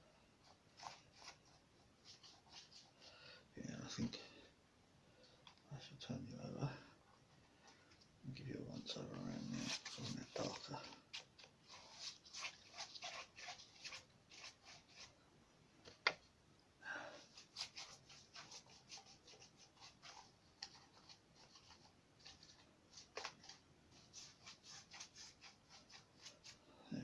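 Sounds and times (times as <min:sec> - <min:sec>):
paintbrush strokes on paper: 0:00.4 - 0:03.1, 0:08.4 - 0:15.2, 0:17.2 - 0:27.0.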